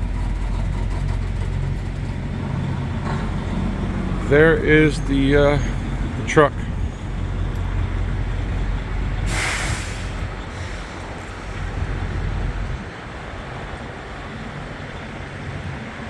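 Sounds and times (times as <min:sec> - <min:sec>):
diesel truck idling: 0:00.0 - 0:16.0
air brake hiss: 0:09.2 - 0:11.7.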